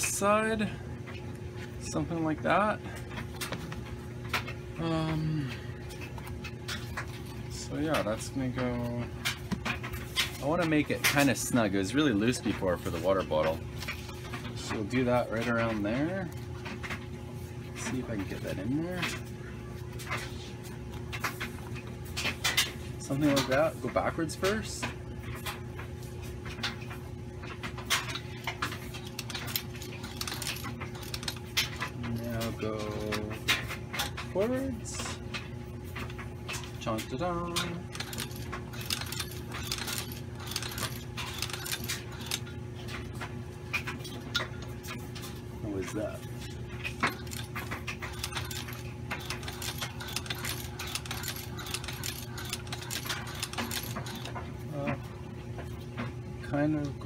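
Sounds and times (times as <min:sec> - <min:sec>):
low steady hum: 0:00.0 - 0:57.0
mechanical clicks and knocks: 0:27.5 - 0:34.6, 0:35.4 - 0:45.3, 0:46.8 - 0:55.0
sewing machine metallic clicks: 0:48.1 - 0:54.3.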